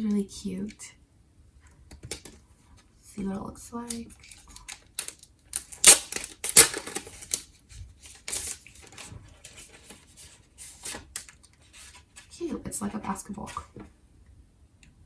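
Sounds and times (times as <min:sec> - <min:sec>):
plastic case packaging rustling: 0:04.2 - 0:13.9.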